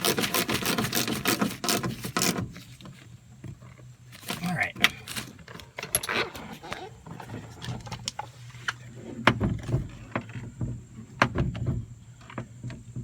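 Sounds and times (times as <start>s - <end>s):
door check strap clicking and clunking: 0.0s - 3.6s.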